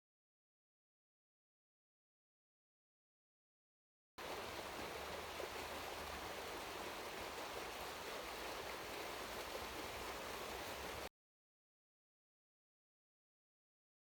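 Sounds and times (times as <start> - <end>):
stream water rushing: 4.2 - 11.1.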